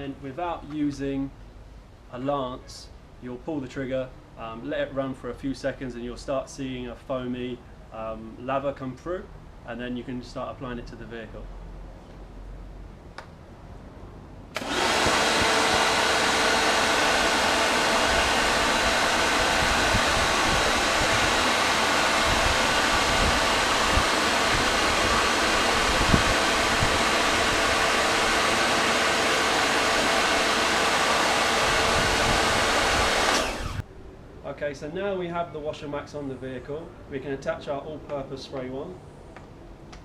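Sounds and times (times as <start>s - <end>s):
pressure washer running: 14.6s - 33.8s.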